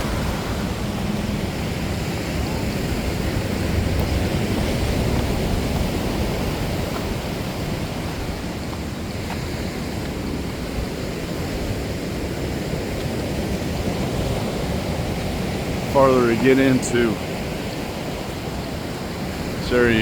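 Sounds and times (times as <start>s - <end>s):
wind buffeting microphone: 0.0s - 16.0s
ocean surf rushing: 0.0s - 20.0s.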